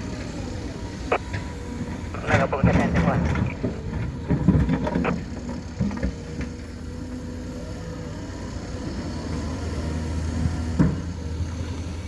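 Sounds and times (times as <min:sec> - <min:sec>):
engine whine: 0:00.0 - 0:12.0
heavy diesel engine rumbling: 0:00.0 - 0:12.0.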